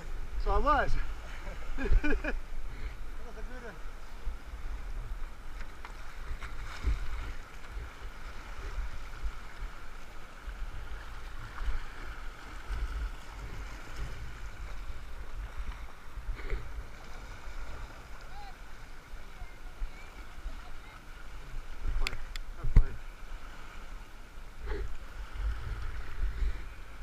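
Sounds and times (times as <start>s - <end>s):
river water rushing and splashing: 0.0s - 27.0s
wind buffeting on microphone: 24.8s - 27.0s.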